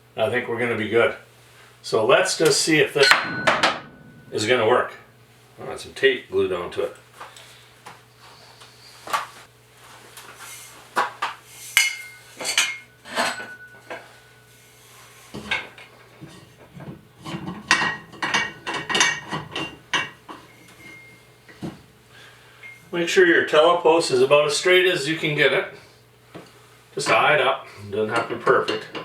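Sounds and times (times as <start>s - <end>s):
metal clanks and clinks: 3.0s - 5.0s, 11.8s - 14.1s, 17.3s - 21.2s
low thud: 3.0s - 5.2s.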